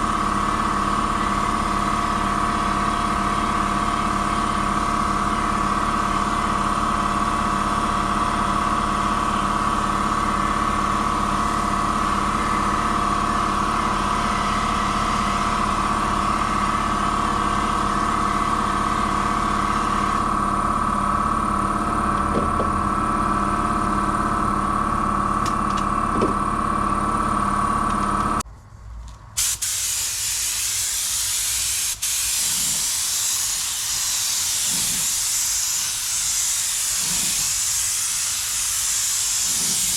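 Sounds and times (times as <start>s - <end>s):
machine droning: 0.0s - 29.4s
spray gun air hissing: 29.4s - 39.9s.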